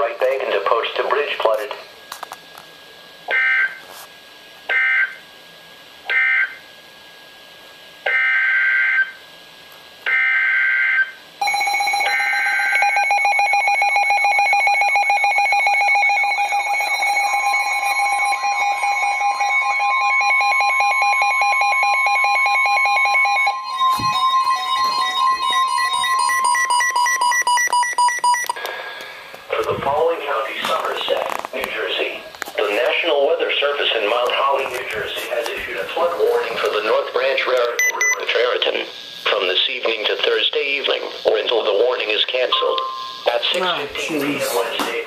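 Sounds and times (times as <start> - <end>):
higher electronic tone: 23.3 - 28.6
warbling data bursts: 23.3 - 34.6
buzzy electronic alert tone: 23.5 - 28.2.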